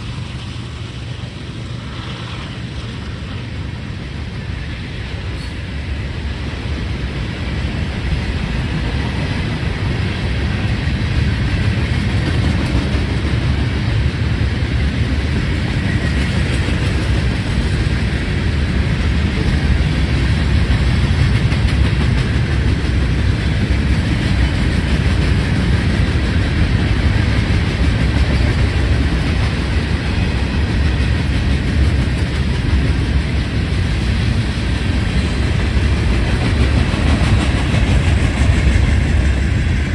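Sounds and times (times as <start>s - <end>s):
train rumbling past: 0.0s - 39.9s.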